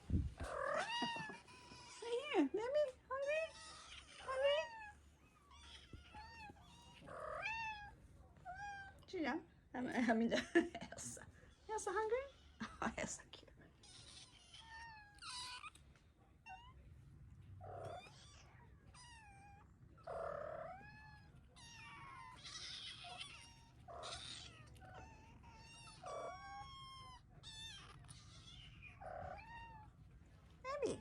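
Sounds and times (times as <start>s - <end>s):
kittens mewing: 0.4s - 2.4s, 3.2s - 9.0s, 13.8s - 16.8s, 17.6s - 30.0s.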